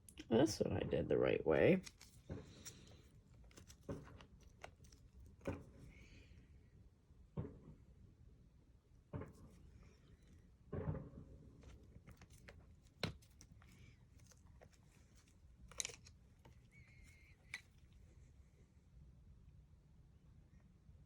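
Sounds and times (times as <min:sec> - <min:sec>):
faint squeak: 0:16.5 - 0:17.7.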